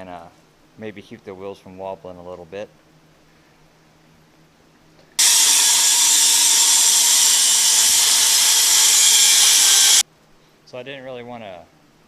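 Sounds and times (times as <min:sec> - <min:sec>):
angle grinder on steel: 0:05.2 - 0:10.0.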